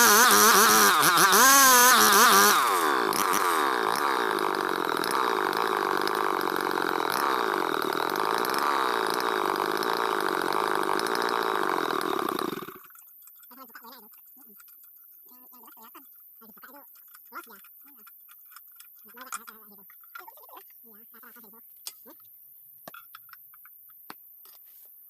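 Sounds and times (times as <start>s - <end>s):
wood saw engine revving: 0.0s - 12.9s.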